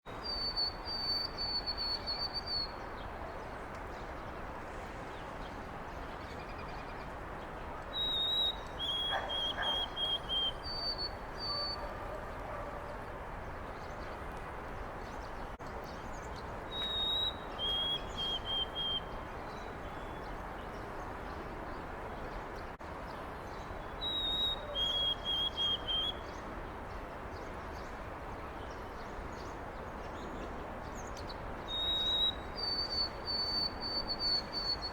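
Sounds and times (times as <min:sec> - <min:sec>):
sparrow whistled song: 0:08.0 - 0:11.8, 0:16.7 - 0:19.1, 0:24.0 - 0:26.3, 0:31.7 - 0:34.9.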